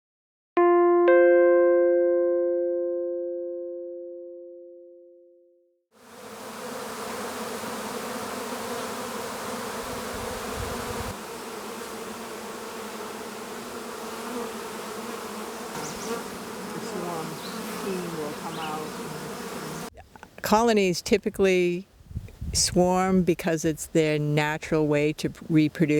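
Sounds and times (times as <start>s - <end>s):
bees buzzing: 6.0s - 19.9s.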